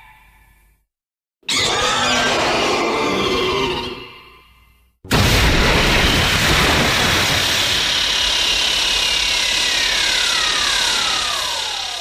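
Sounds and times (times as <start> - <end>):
loud rushing blast: 5.1 - 8.6.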